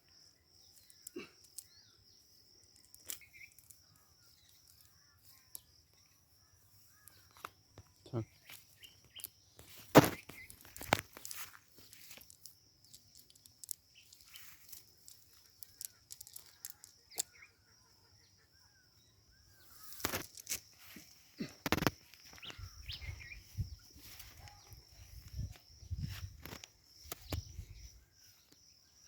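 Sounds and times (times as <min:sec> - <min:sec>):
small birds chirping: 0:00.0 - 0:29.0
sharp rustles and knocks: 0:08.5 - 0:16.9, 0:19.8 - 0:23.2.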